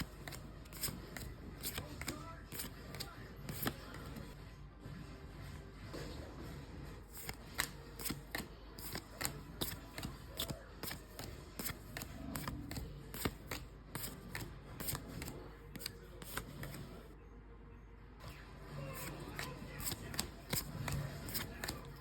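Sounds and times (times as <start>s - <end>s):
cards sliding and rustling: 0.0s - 4.4s, 7.1s - 17.1s, 18.9s - 22.0s
trading cards snapping: 0.0s - 4.4s, 7.1s - 17.0s, 19.0s - 22.0s.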